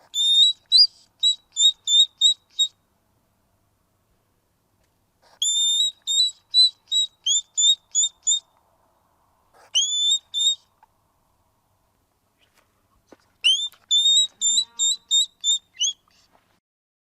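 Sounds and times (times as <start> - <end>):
hedgehog squeaking: 0.1 - 2.7, 5.3 - 8.5, 9.6 - 10.6, 13.4 - 16.2.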